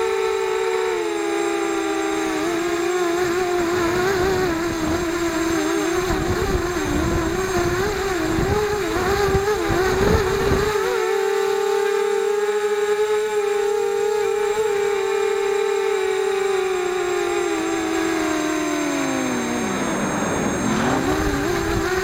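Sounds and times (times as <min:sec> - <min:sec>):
drone motors whining: 0:00.0 - 0:22.0
low rushing rumble: 0:19.0 - 0:22.0.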